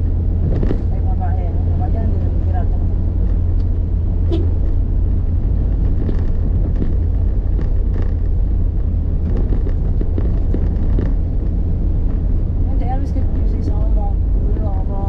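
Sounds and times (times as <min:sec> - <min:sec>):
vehicle rumble: 0:00.0 - 0:15.0.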